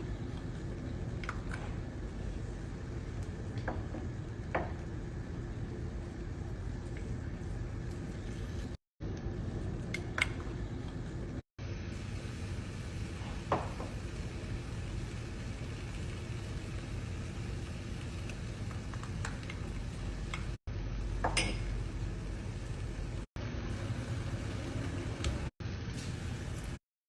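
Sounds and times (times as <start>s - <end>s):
steady low hum: 0.0s - 25.5s.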